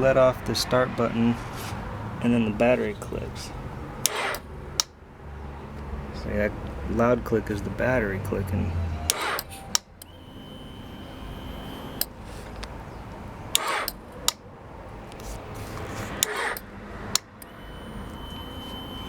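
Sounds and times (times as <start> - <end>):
loud battery click: 4.0 - 5.0, 9.1 - 12.8, 13.5 - 14.5, 16.1 - 18.8
relay clicking: 4.0 - 5.0, 9.0 - 12.8, 13.5 - 14.5, 15.1 - 19.0
faint high whine: 8.9 - 12.2, 17.4 - 19.0.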